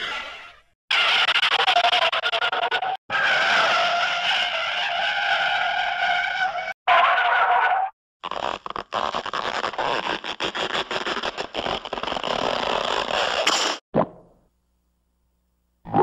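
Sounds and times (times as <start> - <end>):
car tyres screeching: 0.0 - 7.9.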